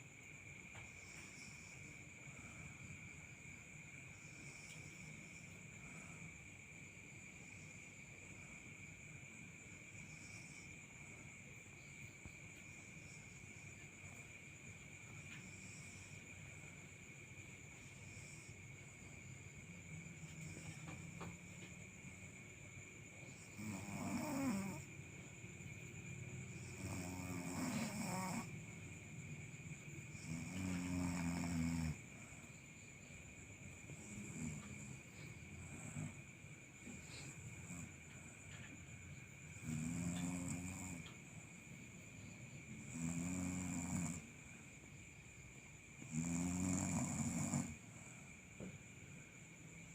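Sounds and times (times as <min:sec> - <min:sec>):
high-pitched insect drone: 0:23.2 - 0:29.0, 0:29.7 - 0:36.2
cat snoring: 0:23.3 - 0:24.9, 0:26.5 - 0:28.5, 0:30.1 - 0:32.1, 0:34.0 - 0:35.0, 0:39.6 - 0:41.2, 0:42.8 - 0:44.3, 0:46.0 - 0:47.8.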